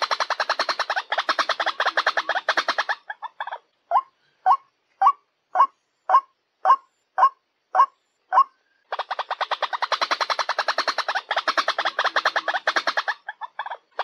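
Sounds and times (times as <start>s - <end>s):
waterhen calling: 0.0s - 14.0s.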